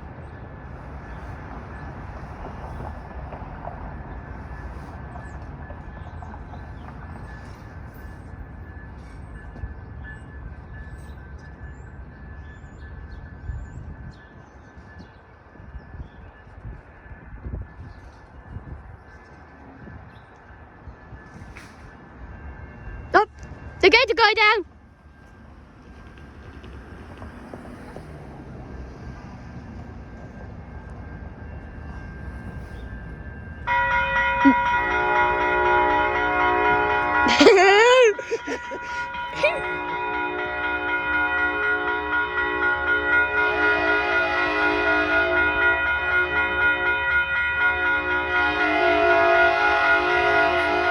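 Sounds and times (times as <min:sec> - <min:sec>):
passenger train rumbling: 0:00.0 - 0:50.9
train horn chord: 0:33.7 - 0:37.5, 0:38.2 - 0:50.9.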